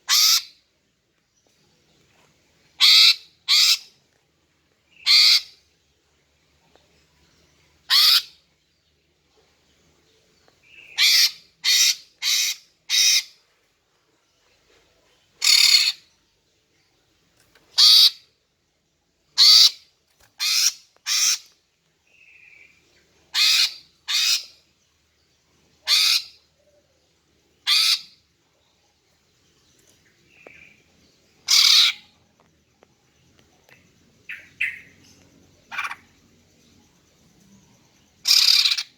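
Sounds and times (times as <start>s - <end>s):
bird harsh calls: 0.0s - 0.6s, 2.8s - 3.9s, 5.0s - 5.6s, 7.9s - 8.4s, 10.7s - 13.4s, 15.4s - 16.1s, 17.7s - 18.3s, 19.4s - 19.8s, 20.4s - 21.5s, 23.3s - 24.6s, 25.8s - 26.4s, 27.6s - 28.2s, 31.4s - 32.1s, 34.3s - 36.1s, 38.2s - 38.9s.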